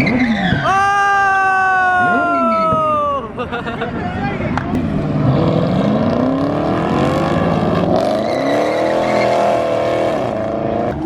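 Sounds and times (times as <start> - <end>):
car engine revving: 4.8 - 11.0.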